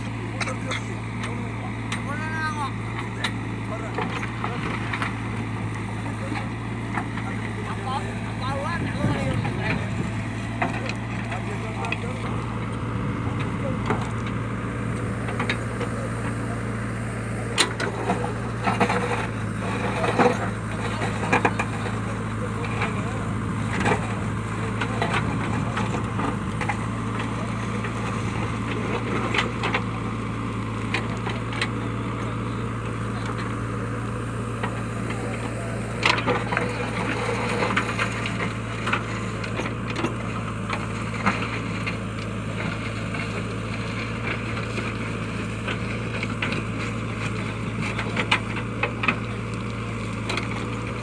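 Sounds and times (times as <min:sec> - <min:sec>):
diesel engine running: 0:00.0 - 0:51.0.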